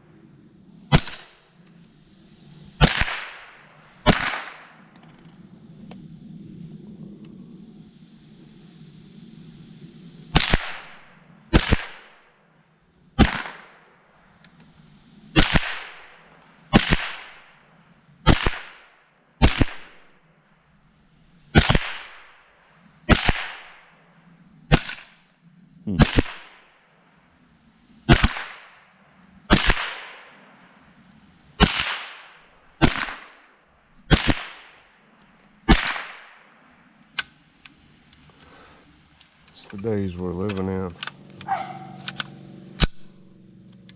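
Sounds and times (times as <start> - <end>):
rifle shots echoing: 0.9 - 1.4, 2.8 - 4.8, 10.3 - 12.2, 13.2 - 13.8, 15.4 - 17.6, 18.2 - 20.1, 21.6 - 22.3, 23.1 - 23.9, 26.0 - 26.6, 28.1 - 28.7, 29.5 - 30.4, 31.6 - 33.4, 34.1 - 34.8, 35.6 - 36.5.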